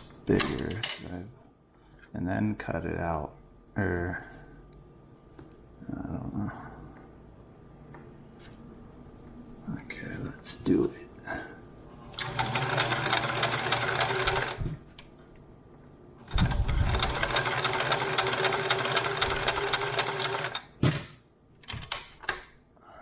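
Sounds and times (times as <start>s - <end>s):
sewing machine stitching: 12.1s - 14.6s, 16.3s - 20.7s.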